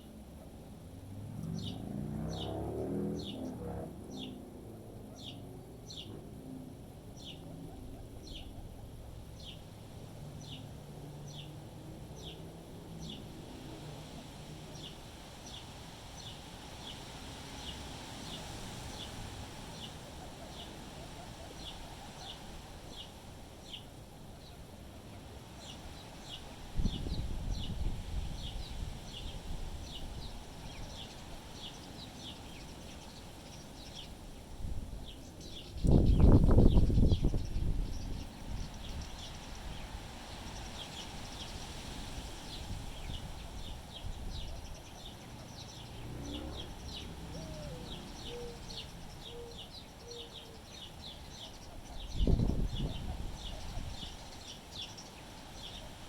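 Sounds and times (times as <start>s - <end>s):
small bird chirping: 17.6s - 56.0s
wind rumbling on microphone: 25.6s - 33.2s, 33.8s - 49.3s, 51.1s - 54.8s.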